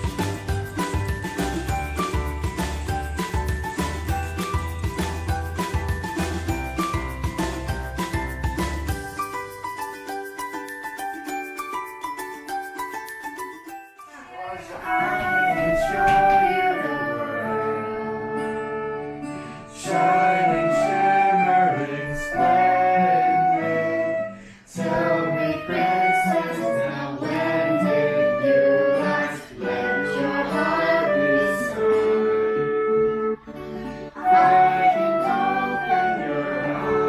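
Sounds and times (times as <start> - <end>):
instrumental accompaniment: 0.0 - 37.0
person singing: 14.4 - 37.0.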